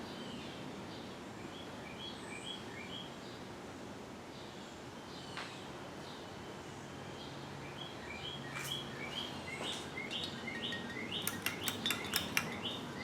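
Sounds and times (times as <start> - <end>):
ceiling fan humming: 0.0 - 13.0
bird chirping: 7.1 - 13.0
sharp clicks: 10.1 - 12.8.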